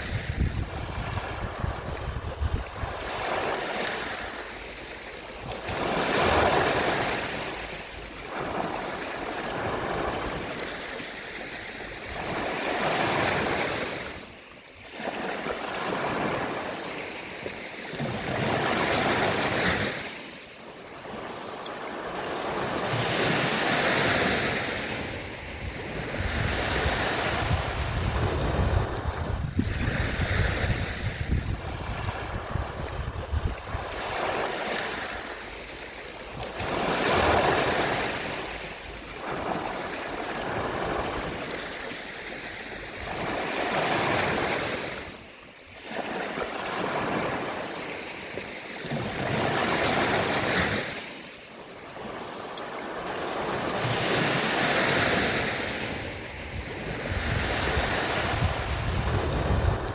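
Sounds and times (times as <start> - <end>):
wind rumble on microphone: 0.0 - 11.0, 22.1 - 45.2, 53.0 - 59.9
sea waves washing onto shore: 0.0 - 59.9.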